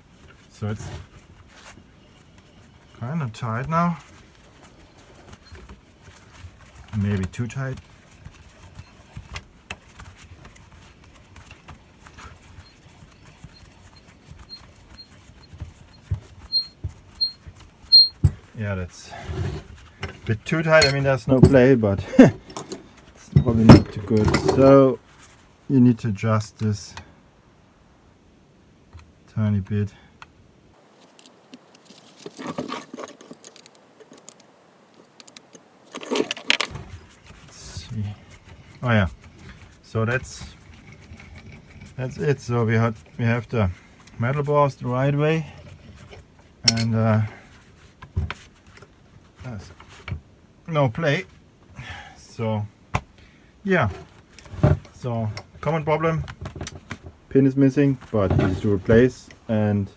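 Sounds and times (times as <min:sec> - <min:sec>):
faint squeaks: 0:11.6 - 0:25.0
vise metal clicks and scrapes: 0:19.5 - 0:21.8, 0:22.4 - 0:24.8
bench vise clicks and knocks: 0:22.4 - 0:24.7.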